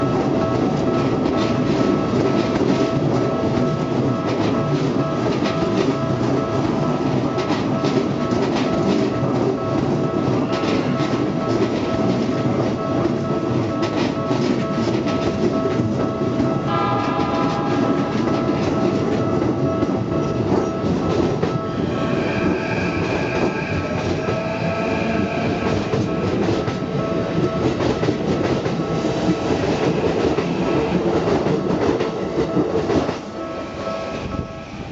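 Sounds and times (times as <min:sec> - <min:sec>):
crossing warning bell ringing: 0:00.0 - 0:34.9
train wheels rumbling on rails: 0:00.0 - 0:34.9
train horn: 0:16.6 - 0:18.9, 0:21.6 - 0:26.2.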